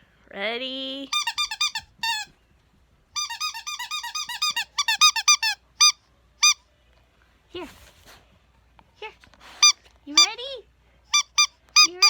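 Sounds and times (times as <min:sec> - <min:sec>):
squeaky toy squeaking: 0:01.1 - 0:02.3, 0:03.2 - 0:06.6, 0:09.6 - 0:10.4, 0:11.1 - 0:12.0.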